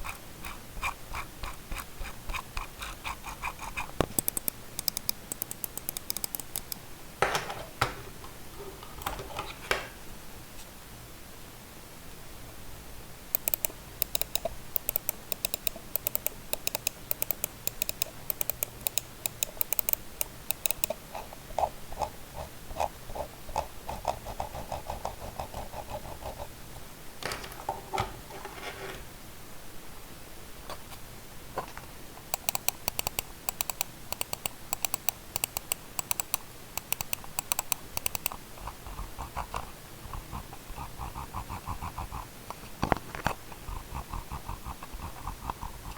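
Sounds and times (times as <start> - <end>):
mouse buttons clicking rapidly: 0.0 - 6.8, 13.3 - 26.5, 32.2 - 39.7, 43.5 - 45.9
scroll wheel ticking: 0.0 - 6.8, 13.4 - 21.0, 32.3 - 38.4.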